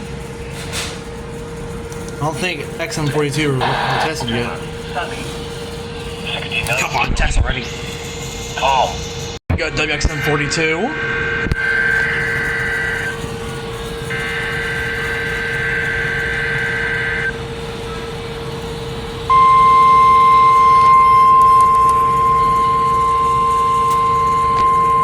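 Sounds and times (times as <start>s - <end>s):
steady low hum: 0.0s - 25.0s
steady warning alert tone: 2.2s - 7.0s, 19.3s - 25.0s
data tone bursts: 3.6s - 4.6s, 14.1s - 17.4s, 19.3s - 25.0s.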